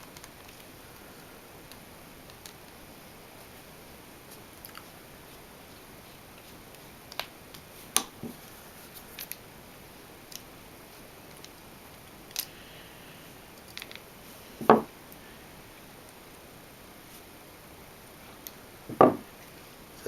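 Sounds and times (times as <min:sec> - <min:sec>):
loud knock: 0:18.9 - 0:19.2.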